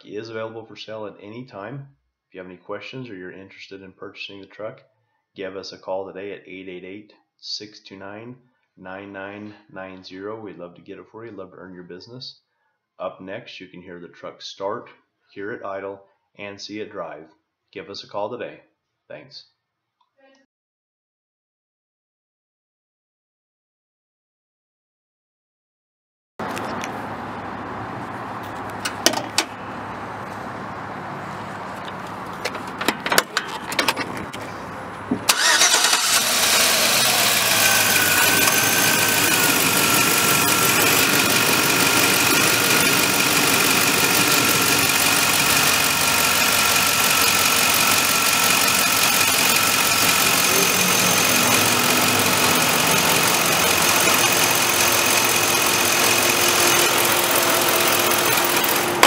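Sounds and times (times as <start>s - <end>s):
sharp clicks and knocks: 28.6s - 29.5s, 31.8s - 34.5s
engine starting and idling: 31.8s - 59.0s.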